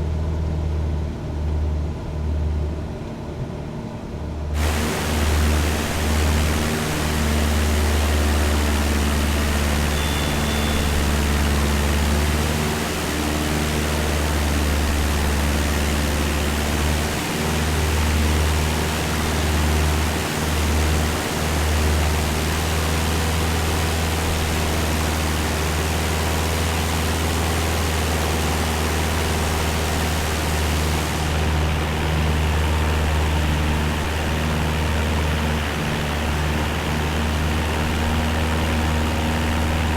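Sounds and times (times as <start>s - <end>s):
propeller plane engine droning: 0.0s - 39.9s
wind and airflow rush: 4.6s - 9.9s, 11.0s - 36.9s.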